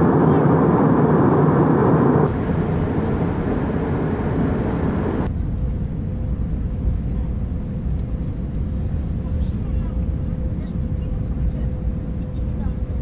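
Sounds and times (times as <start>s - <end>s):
airliner cabin rumble: 0.0s - 13.0s
faint steady hum: 2.3s - 7.3s.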